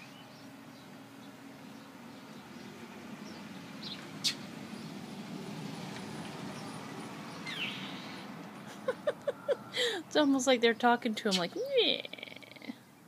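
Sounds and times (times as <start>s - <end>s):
sharp bird chirps: 7.4s - 8.2s.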